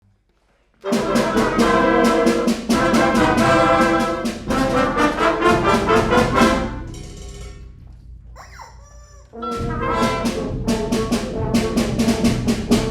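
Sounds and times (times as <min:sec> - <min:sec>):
concert band playing a galop: 0:00.8 - 0:06.9, 0:09.4 - 0:12.9
steady drum beat: 0:00.8 - 0:12.9.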